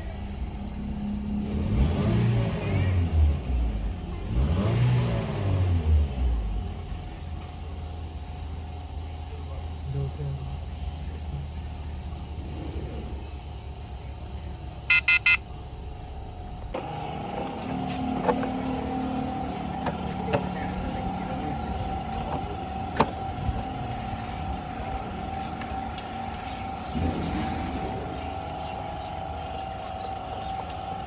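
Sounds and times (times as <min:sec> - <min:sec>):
quick electronic beeps: 0:14.9 - 0:15.4.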